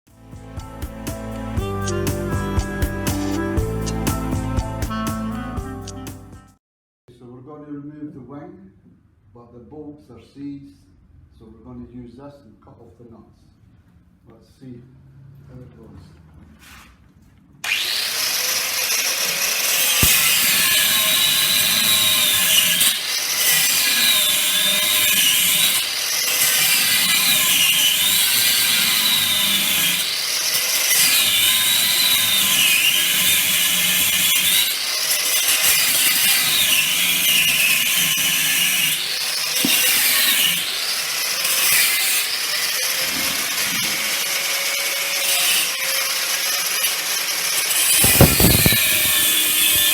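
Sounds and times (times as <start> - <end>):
power tool cutting metal: 17.6 - 49.9.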